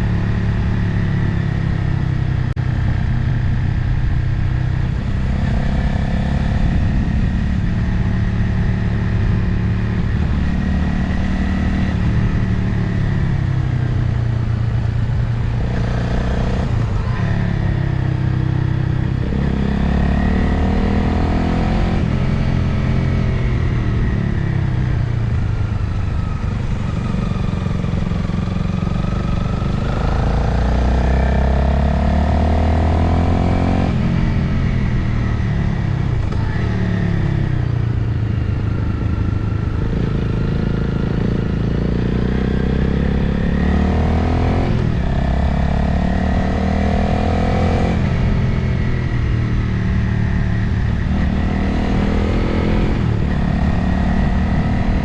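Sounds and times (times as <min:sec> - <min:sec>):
motorcycle engine: 0:00.0 - 0:55.0.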